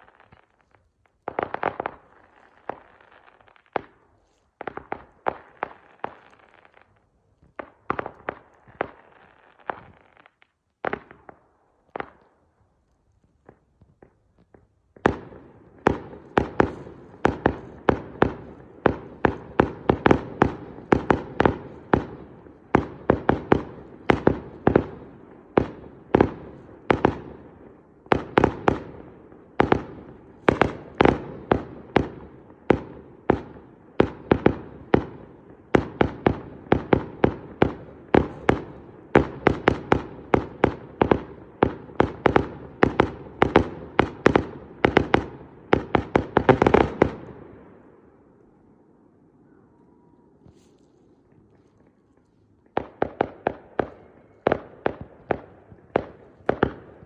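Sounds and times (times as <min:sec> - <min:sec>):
fireworks bangs: 0:13.4 - 0:47.7, 0:50.4 - 0:57.0.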